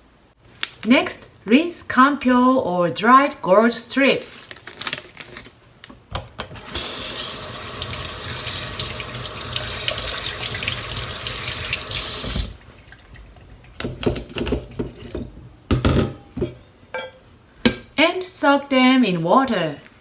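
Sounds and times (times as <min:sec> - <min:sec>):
tap water running into sink: 0:06.6 - 0:15.3.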